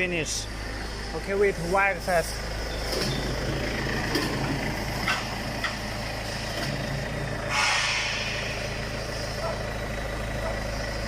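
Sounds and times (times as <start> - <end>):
short hiss: 7.5 - 8.7.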